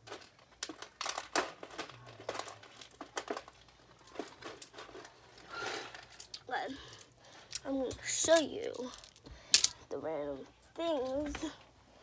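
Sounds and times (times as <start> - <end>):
rustling of handled things: 0.0 - 12.0.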